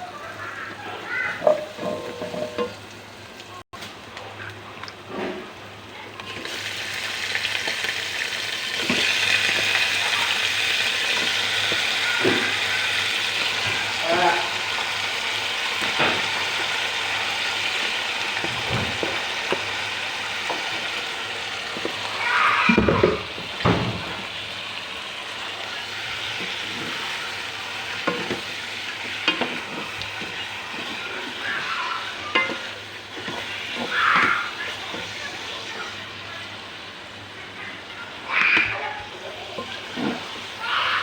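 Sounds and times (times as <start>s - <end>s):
chicken sizzling in a pan: 0.0s - 41.0s
spatula scraping a pan: 1.3s - 2.8s, 26.2s - 35.3s.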